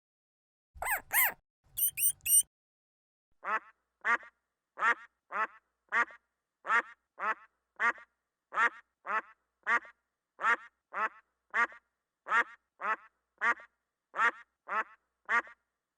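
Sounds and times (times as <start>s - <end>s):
bird calling: 0.8s - 2.4s.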